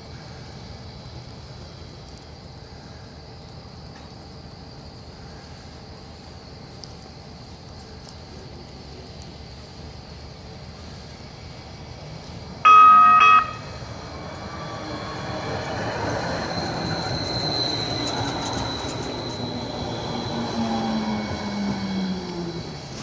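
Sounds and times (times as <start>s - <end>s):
train rumble: 10.9s - 23.0s
train horn blast: 12.6s - 13.8s
thin high whine: 12.6s - 23.0s.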